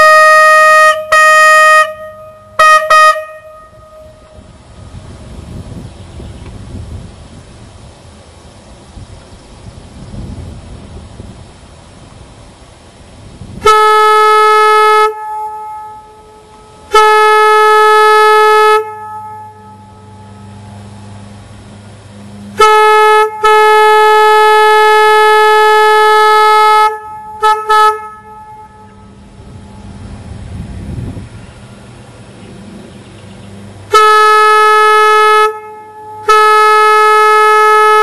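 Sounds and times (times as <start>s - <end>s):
air horn blasts: 0.0s - 5.0s, 13.5s - 21.4s, 22.4s - 29.9s, 33.9s - 38.0s.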